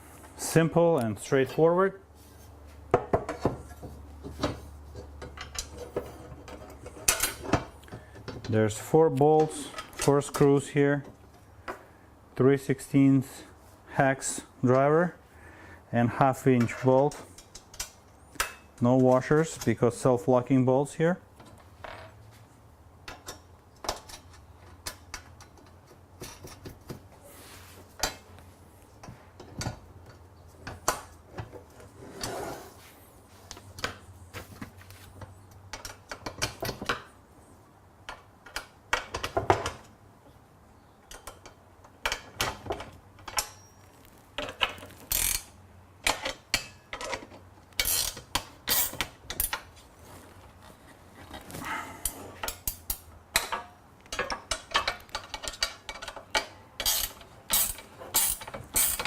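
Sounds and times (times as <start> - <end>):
metallic clicking of hex driver: 52.0 - 59.0.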